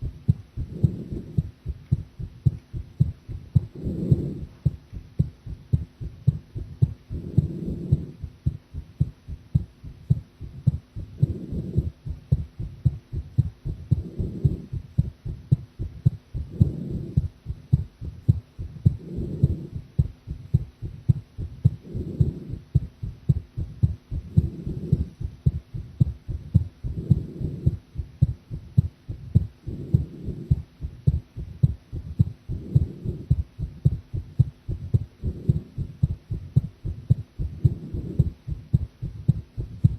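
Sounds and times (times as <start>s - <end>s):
heartbeat thumps: 0.0s - 39.9s.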